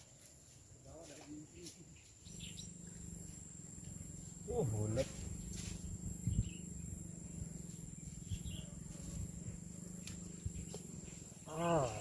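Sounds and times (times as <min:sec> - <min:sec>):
high-pitched insect buzz: 0:00.0 - 0:12.0
faint bird chirps: 0:01.5 - 0:12.0.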